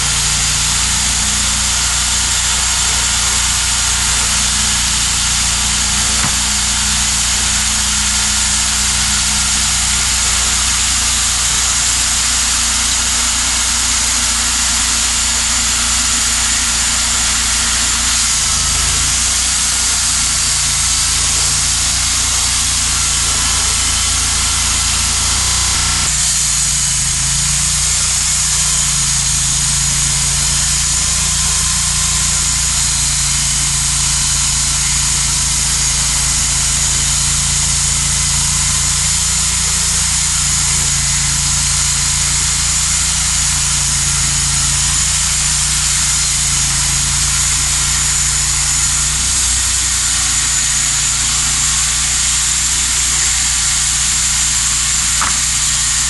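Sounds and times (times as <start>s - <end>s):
sawmill engine humming: 0.0s - 56.0s
band blade cutting log hiss: 0.1s - 12.9s, 41.6s - 56.0s.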